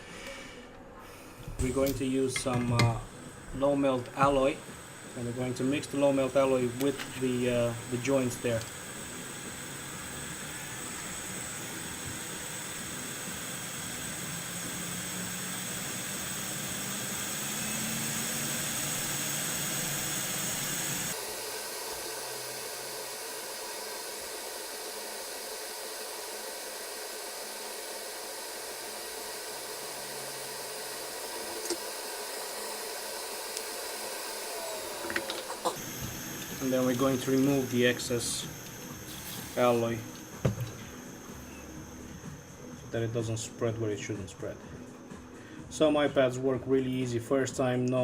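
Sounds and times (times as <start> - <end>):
hot air station hissing: 0.0 - 46.3
low hum: 34.7 - 45.7.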